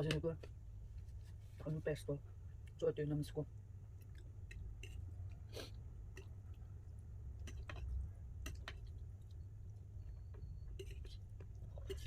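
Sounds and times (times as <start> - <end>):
chewing and wet mouth sounds: 3.9 - 12.0.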